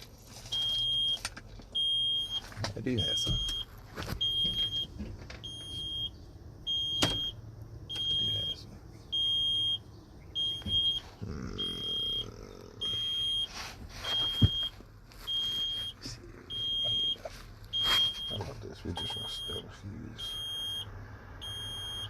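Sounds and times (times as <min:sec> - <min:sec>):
truck warning beeper: 0:00.5 - 0:01.2, 0:01.8 - 0:22.0
handling clicks and rustles: 0:16.6 - 0:19.5.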